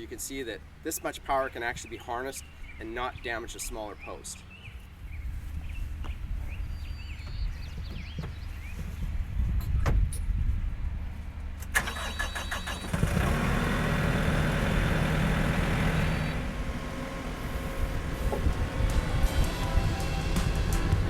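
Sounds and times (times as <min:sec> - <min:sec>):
skid steer engine running: 0:11.7 - 0:21.0.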